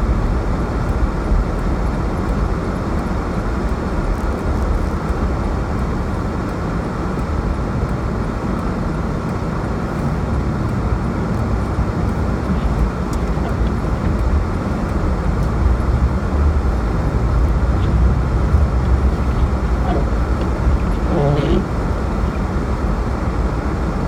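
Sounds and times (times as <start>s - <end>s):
road traffic rumble: 0.0s - 24.0s.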